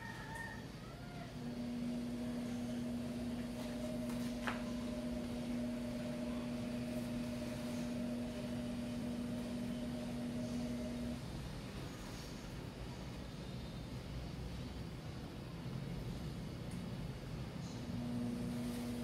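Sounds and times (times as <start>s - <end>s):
small motor humming: 1.3s - 11.3s, 17.7s - 19.0s.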